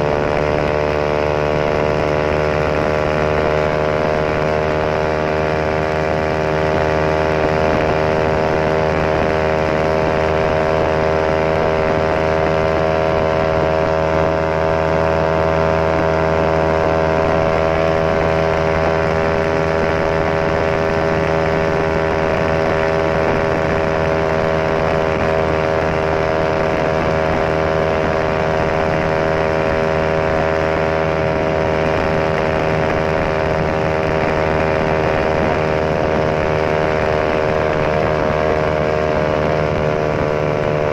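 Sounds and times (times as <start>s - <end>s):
motorcycle engine running steadily: 0.0s - 40.9s.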